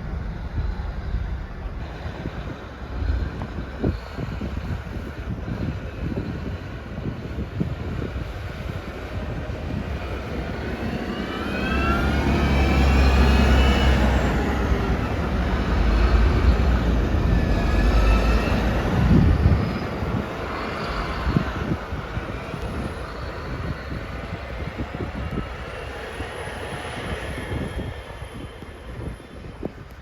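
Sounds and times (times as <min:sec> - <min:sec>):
heavy vehicle engine rumbling: 0:00.0 - 0:06.1, 0:10.3 - 0:22.2.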